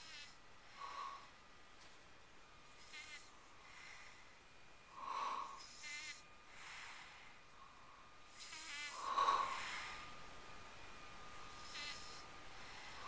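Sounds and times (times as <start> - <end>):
person snoring: 4.9 - 7.2, 8.3 - 10.1, 11.5 - 13.0.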